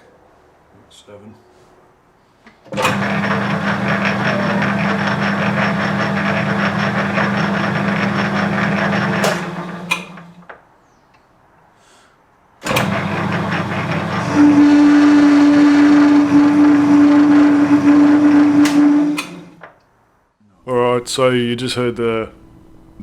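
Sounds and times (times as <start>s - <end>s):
metal lathe cutting steel: 2.8s - 10.3s, 12.7s - 19.6s
lathe motor hum: 2.8s - 10.4s, 12.6s - 19.6s
lathe switch click: 18.6s - 19.5s.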